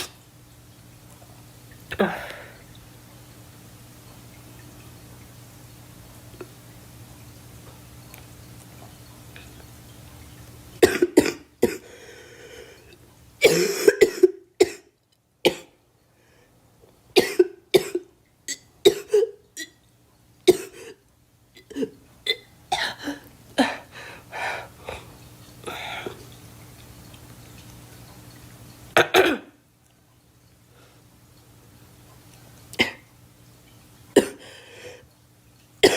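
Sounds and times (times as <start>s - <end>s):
girl coughing: 1.9s - 2.5s, 13.4s - 14.9s, 17.2s - 18.0s, 18.9s - 19.7s, 20.5s - 21.0s, 21.6s - 23.8s, 29.0s - 29.5s, 34.2s - 34.4s.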